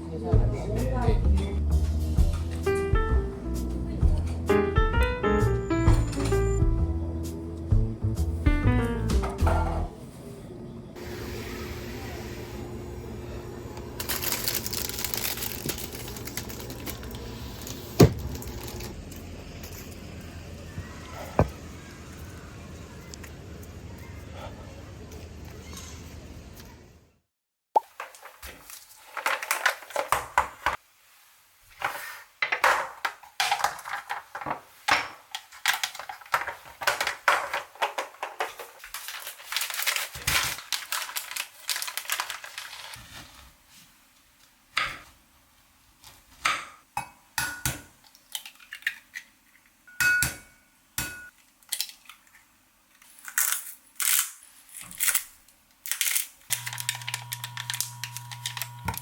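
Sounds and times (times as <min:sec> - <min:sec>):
rustling and crinkling: 0:14.0 - 0:22.3, 0:28.0 - 0:32.3, 0:33.4 - 0:44.6, 0:51.7 - 0:59.0.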